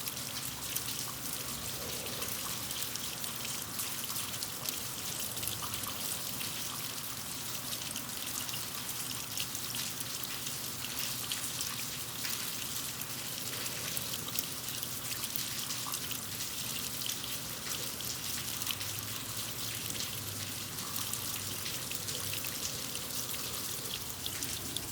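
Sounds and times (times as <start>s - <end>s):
rain falling on concrete: 0.0s - 24.9s
water running in a gutter: 0.0s - 24.9s.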